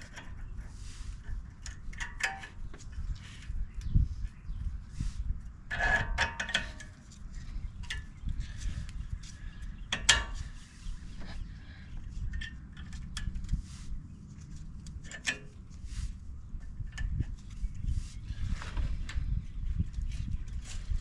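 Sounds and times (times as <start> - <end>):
metal parts clicking and tapping: 1.6 - 2.8, 5.7 - 7.1, 9.9 - 10.4, 14.8 - 15.6
steady low rumble: 6.8 - 21.0.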